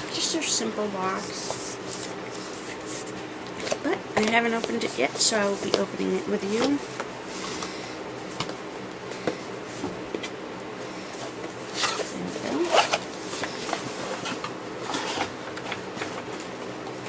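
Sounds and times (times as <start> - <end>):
cardboard box packaging rustling and tearing: 11.7 - 14.4.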